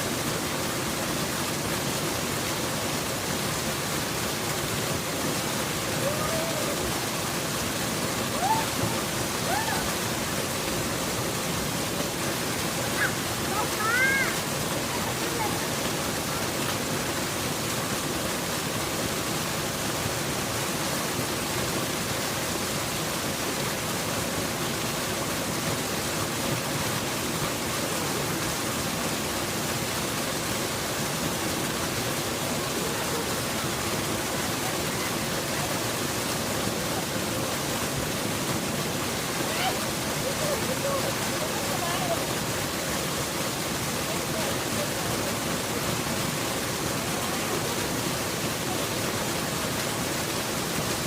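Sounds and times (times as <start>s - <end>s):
waterfall rushing: 0.0s - 51.0s.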